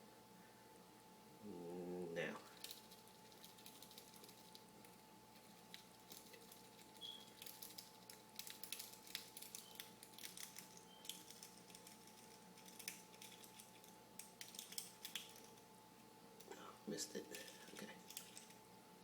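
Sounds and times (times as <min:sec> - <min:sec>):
steady low hum: 0:00.0 - 0:19.0
metallic clicking and scratching: 0:02.5 - 0:15.6, 0:17.3 - 0:18.6.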